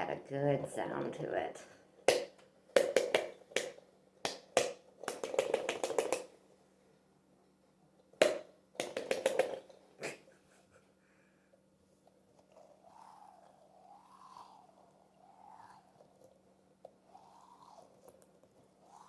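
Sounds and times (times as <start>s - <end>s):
stress ball slapped and squished: 2.1s - 6.3s, 8.2s - 9.6s.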